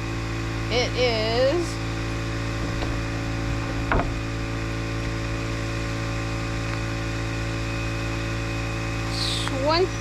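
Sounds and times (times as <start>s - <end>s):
engine humming: 0.0s - 10.0s
short knock: 3.8s - 4.2s.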